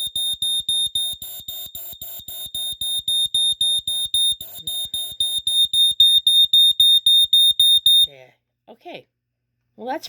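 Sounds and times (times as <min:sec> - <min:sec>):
smoke alarm rapid beeps: 0:00.0 - 0:08.1.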